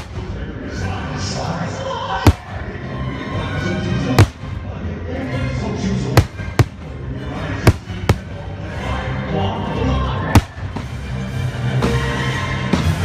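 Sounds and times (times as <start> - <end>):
fireworks bangs: 0.0 - 0.5, 2.2 - 2.7, 4.2 - 4.6, 6.2 - 7.0, 7.6 - 8.4, 10.4 - 10.9.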